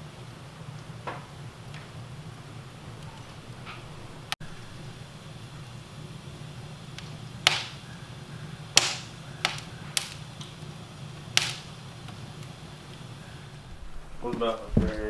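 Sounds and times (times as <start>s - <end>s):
steady low hum: 0.0s - 15.0s
hand tool striking wood: 7.4s - 7.8s, 8.8s - 10.2s, 11.4s - 11.7s.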